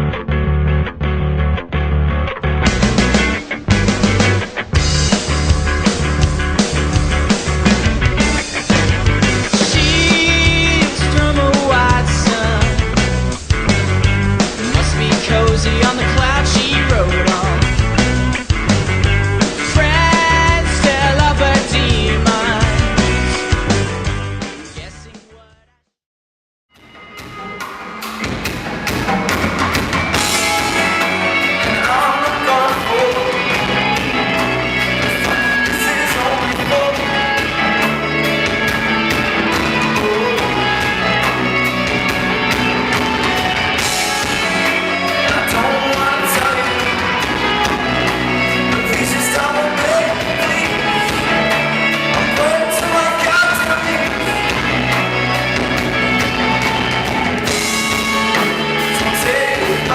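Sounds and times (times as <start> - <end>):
rock song with singing: 0.0 - 25.8, 27.0 - 59.9.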